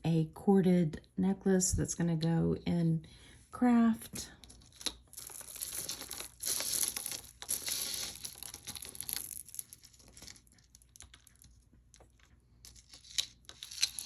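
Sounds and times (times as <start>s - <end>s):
packaging crinkling and rustling: 4.4s - 14.0s.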